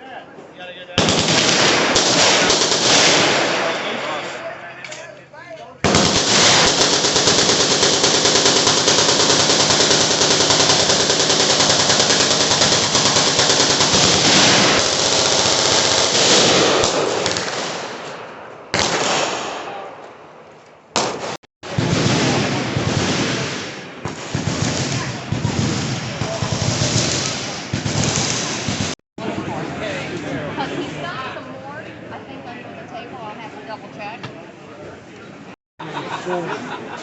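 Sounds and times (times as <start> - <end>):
machine guns firing: 1.0 - 4.4, 5.8 - 19.9, 21.0 - 29.0.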